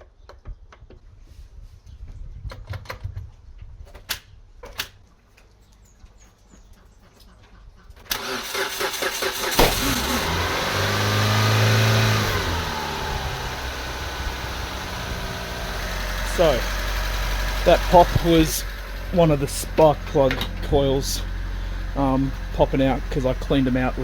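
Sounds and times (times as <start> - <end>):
engine starter cranking: 8.0 - 24.0
car engine idling: 8.2 - 24.0
loud pop: 9.6 - 10.2.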